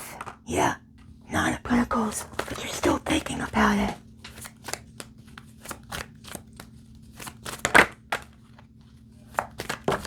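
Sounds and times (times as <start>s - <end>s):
cards flipped and laid down: 2.2s - 10.0s.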